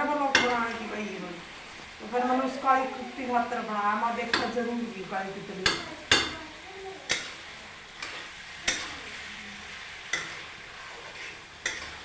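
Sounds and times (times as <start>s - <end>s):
vegetables sizzling in a pan: 0.0s - 12.0s
spoon knocking against pan: 0.3s - 0.7s, 4.2s - 4.7s, 5.6s - 6.4s, 7.1s - 7.4s, 8.0s - 9.2s, 10.1s - 10.5s, 11.6s - 12.0s.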